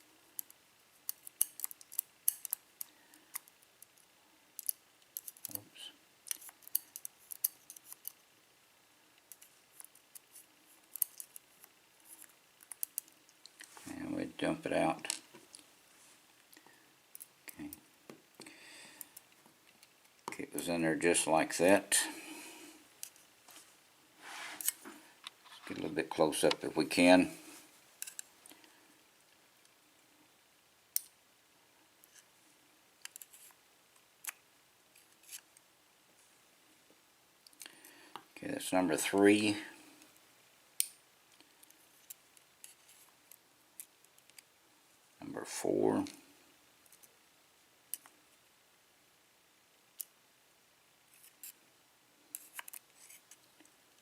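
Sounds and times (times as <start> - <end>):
metallic clicks of lock parts: 0.4 - 4.0, 4.6 - 5.6
small metal parts clicking: 0.4 - 5.6, 6.3 - 8.2, 9.3 - 11.5, 12.1 - 13.2.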